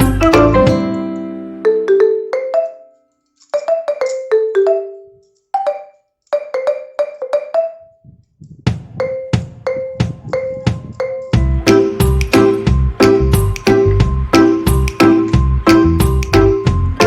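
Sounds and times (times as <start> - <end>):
light melody of struck notes: 0.0 - 1.9, 8.8 - 17.0
low drum beat: 8.1 - 17.0.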